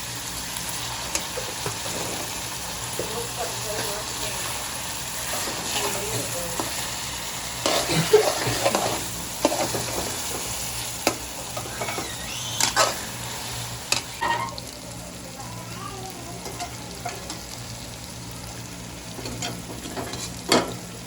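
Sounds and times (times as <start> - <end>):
chicken sizzling in a pan: 0.0 - 21.0
utensil scraping a pan: 5.1 - 13.2, 13.9 - 14.6, 19.2 - 20.7.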